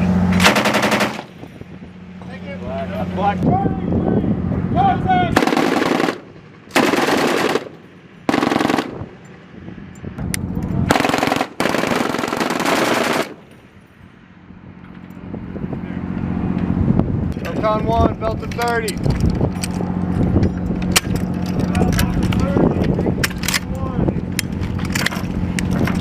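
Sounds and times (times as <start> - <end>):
machine gun firing bursts: 0.4 - 1.3, 5.4 - 7.7, 8.3 - 9.0, 10.9 - 13.4.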